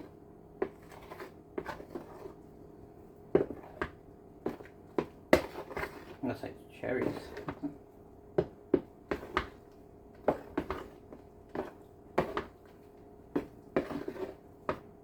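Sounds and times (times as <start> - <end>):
spoon knocking and scraping bowl: 3.4 - 6.2, 8.4 - 9.6, 10.2 - 12.7, 13.3 - 14.9.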